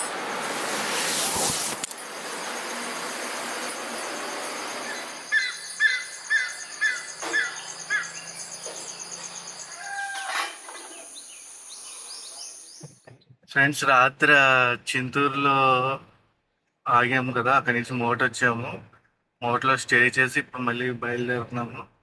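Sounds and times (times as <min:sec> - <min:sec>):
high insect buzz: 0:00.2 - 0:10.1
birds chirping: 0:01.4 - 0:13.1.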